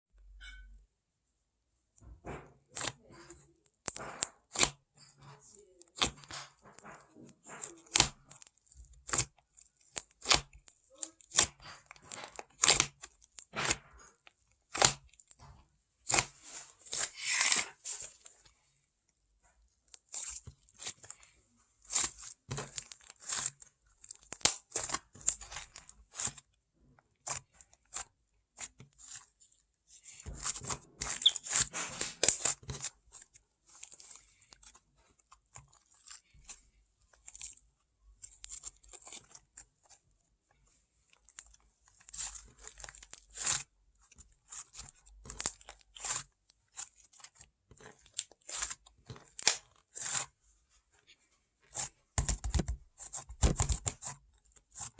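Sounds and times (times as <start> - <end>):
paper crackling and rustling: 29.9 - 37.6, 51.0 - 54.9.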